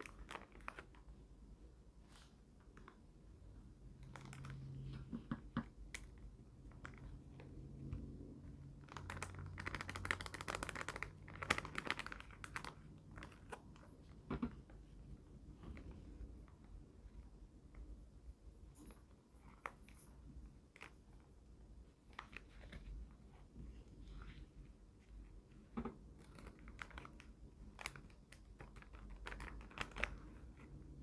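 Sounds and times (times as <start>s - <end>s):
plastic packets crinkling: 8.8s - 13.8s.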